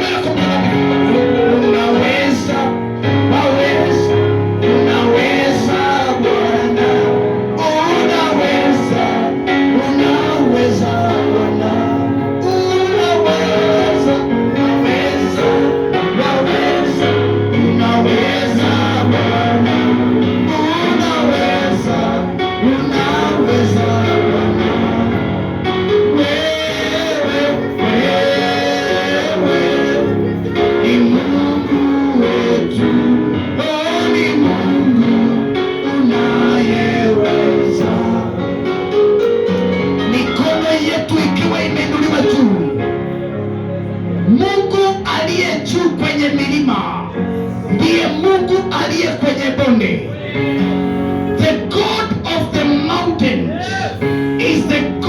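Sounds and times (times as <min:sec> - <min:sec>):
keyboard: 0:00.0 - 0:55.0
voices singing: 0:00.0 - 0:55.0.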